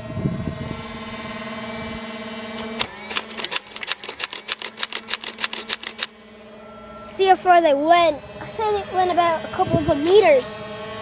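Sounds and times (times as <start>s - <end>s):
toy blaster motor whirring: 0.0s - 11.0s
rapid mechanical clicks: 2.6s - 6.2s.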